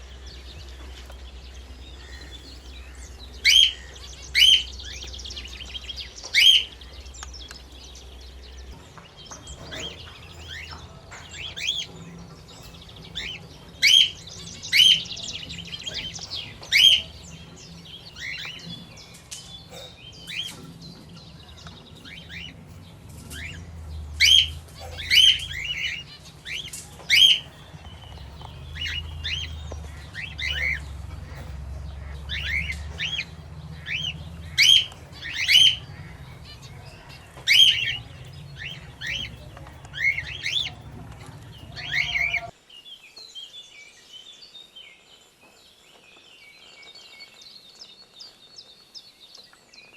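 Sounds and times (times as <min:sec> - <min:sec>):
birds chirping: 0:00.0 - 0:49.9.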